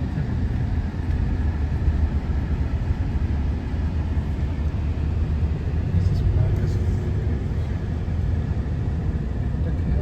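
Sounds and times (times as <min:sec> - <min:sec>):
road and engine rumble: 0:00.0 - 0:10.0.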